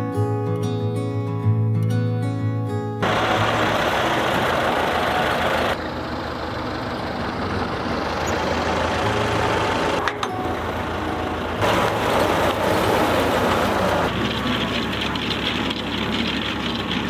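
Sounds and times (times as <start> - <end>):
tractor engine running: 3.0 - 17.0
mechanical clatter: 14.0 - 17.0.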